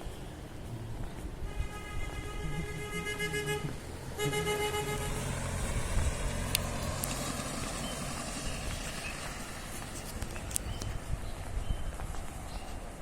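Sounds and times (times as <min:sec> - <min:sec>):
motor vehicle running: 0:00.0 - 0:13.0
vehicle horn honking: 0:01.4 - 0:05.4.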